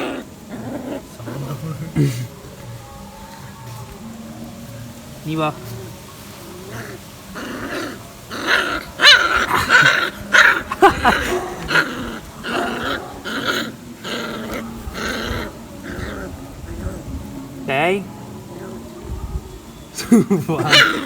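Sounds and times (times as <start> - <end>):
puppies growling and snarling: 0.0 - 2.8, 5.6 - 17.6, 20.3 - 21.0.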